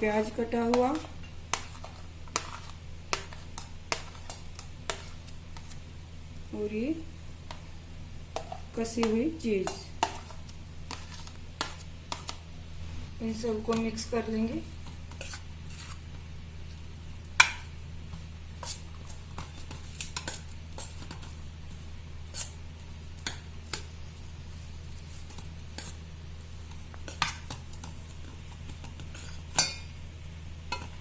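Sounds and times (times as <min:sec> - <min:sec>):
steady low hum: 0:00.0 - 0:31.0
spoon scraping against bowl: 0:00.7 - 0:05.8, 0:08.4 - 0:08.8, 0:09.6 - 0:13.1, 0:15.1 - 0:16.0, 0:18.6 - 0:21.4.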